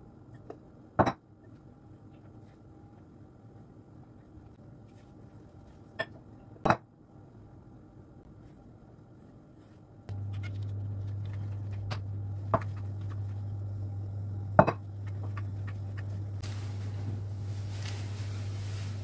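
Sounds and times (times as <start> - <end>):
kitchen appliance humming: 10.1 - 19.0
soft hiss: 16.4 - 19.0.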